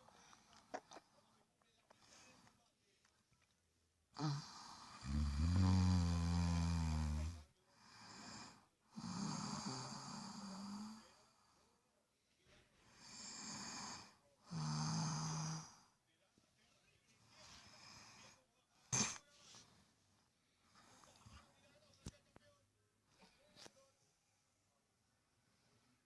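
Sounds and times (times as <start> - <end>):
soft breaths: 0.0 - 3.5, 4.2 - 22.4, 23.0 - 26.0
person snoring: 4.2 - 11.1, 13.0 - 15.8.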